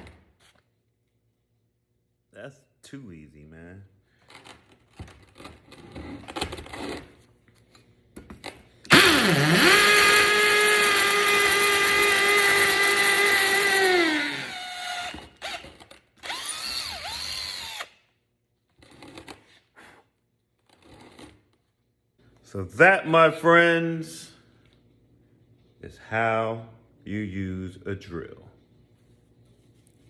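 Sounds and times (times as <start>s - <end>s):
cordless drill motor whining: 8.9s - 18.0s.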